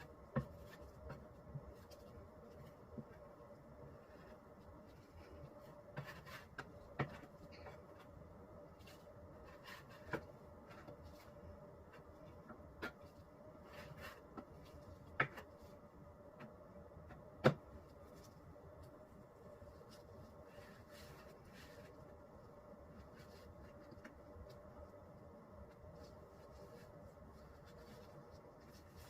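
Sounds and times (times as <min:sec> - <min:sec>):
faint steady hum: 0:00.0 - 0:29.0.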